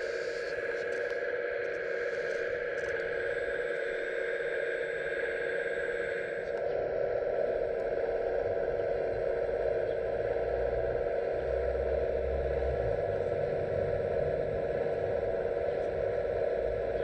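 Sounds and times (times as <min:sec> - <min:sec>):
deep rumble: 0:07.4 - 0:17.0.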